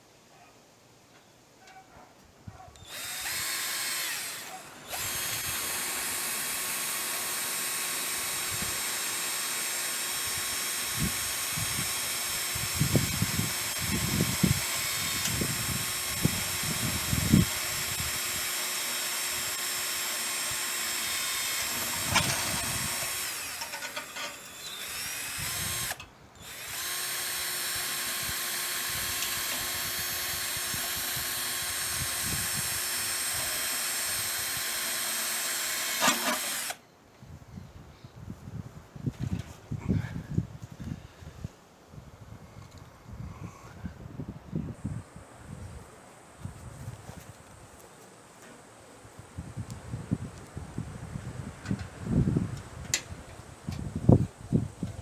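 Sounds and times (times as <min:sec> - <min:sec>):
power drill whining: 0:02.8 - 0:36.8.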